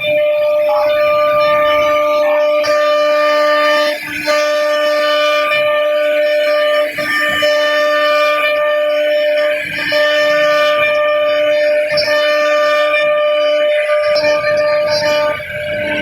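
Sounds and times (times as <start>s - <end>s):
router spindle whining: 0.0s - 16.0s.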